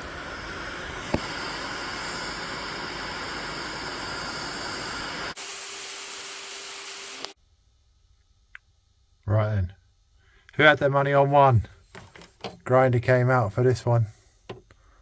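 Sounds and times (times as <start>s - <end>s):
angle grinder cutting metal: 0.0s - 7.4s.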